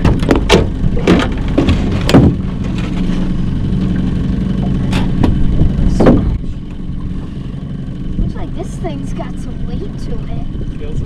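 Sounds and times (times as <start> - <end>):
sharp knocks and clatters: 0.0 - 3.2
outboard motor idling: 0.0 - 11.0.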